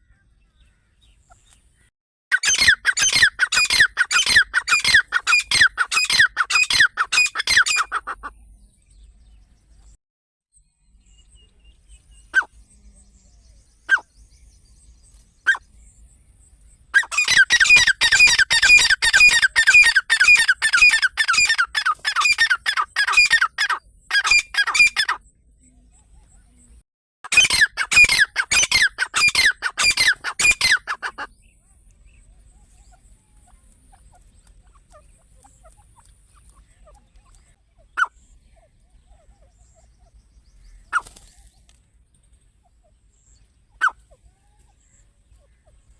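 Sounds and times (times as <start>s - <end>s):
partridge calling: 2.3s - 8.4s, 12.2s - 12.5s, 13.9s - 14.1s, 15.4s - 15.6s, 16.9s - 25.2s, 27.3s - 31.5s, 32.1s - 41.5s, 42.6s - 45.9s.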